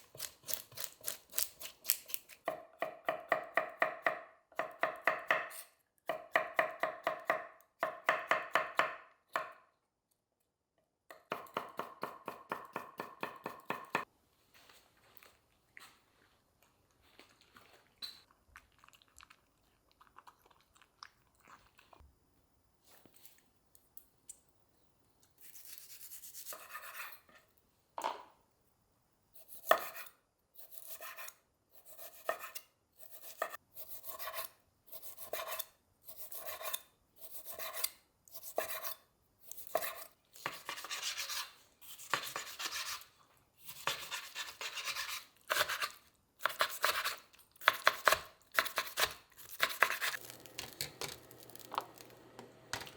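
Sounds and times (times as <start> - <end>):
knife chopping on cutting board: 11.1 - 14.1, 39.6 - 43.0, 43.7 - 52.9.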